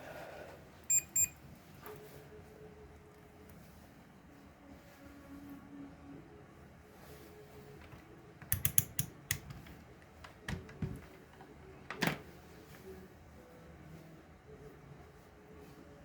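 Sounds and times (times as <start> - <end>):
small hard parts clicking: 8.5 - 9.6.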